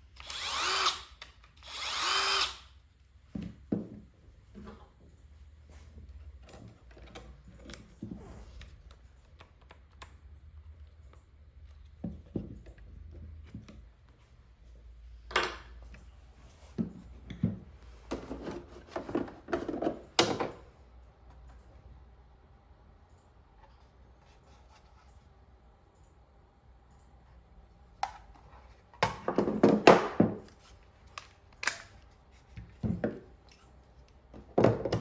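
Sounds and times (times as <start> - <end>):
hard objects clicking and knocking: 29.0 - 30.6.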